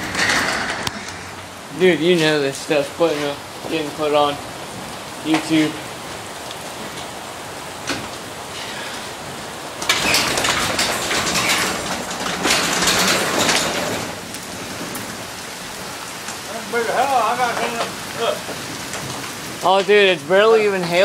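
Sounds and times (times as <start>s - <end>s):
hail and rain falling: 0.0s - 21.0s.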